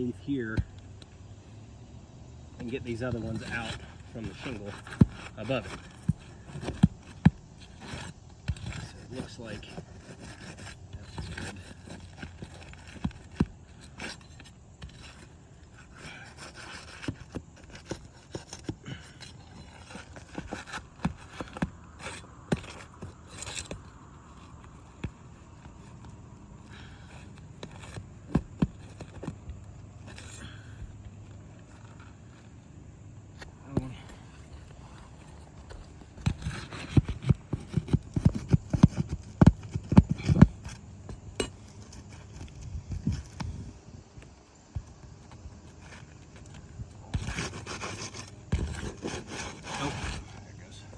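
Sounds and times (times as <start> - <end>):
metal tool scraping roof shingles: 2.6 - 24.6, 33.8 - 43.6, 45.8 - 50.4.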